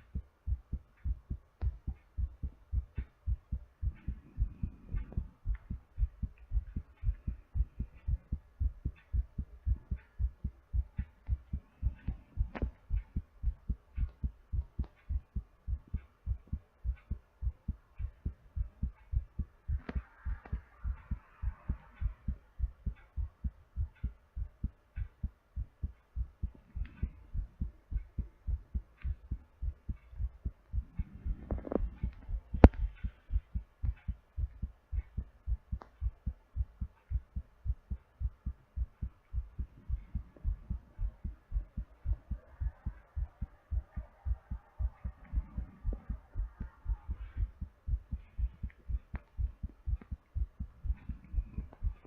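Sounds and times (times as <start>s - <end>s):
heartbeat thumps: 0.0s - 52.0s
soft breathing: 3.8s - 8.8s, 39.0s - 52.0s
sharp click: 30.9s - 36.1s.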